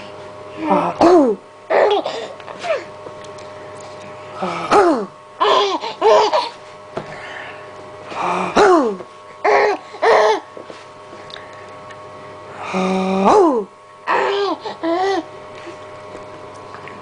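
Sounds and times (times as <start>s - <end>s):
baby laughing: 1.7s - 2.9s, 5.4s - 6.6s, 14.1s - 15.3s.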